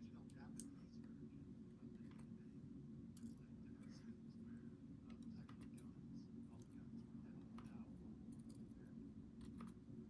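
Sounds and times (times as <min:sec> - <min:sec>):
low steady hum: 0:00.0 - 0:10.0
small clicks of lock parts: 0:09.4 - 0:09.8.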